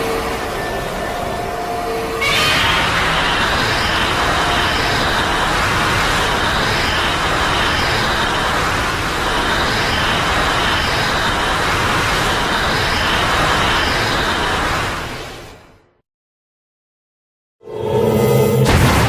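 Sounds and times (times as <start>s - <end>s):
loud rushing rumble: 2.4s - 15.7s.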